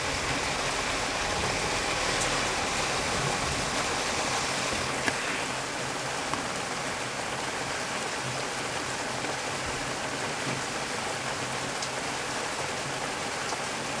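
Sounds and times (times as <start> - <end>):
heavy rain: 0.0 - 14.0.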